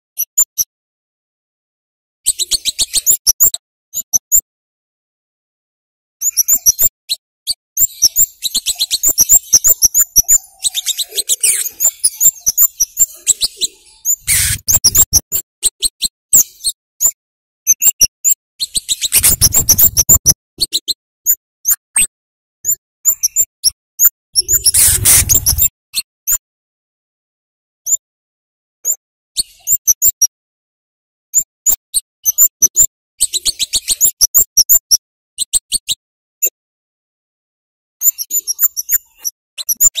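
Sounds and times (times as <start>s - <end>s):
high bird chip calls: 2.3s - 4.4s, 7.5s - 16.8s, 17.8s - 21.4s, 22.7s - 25.7s.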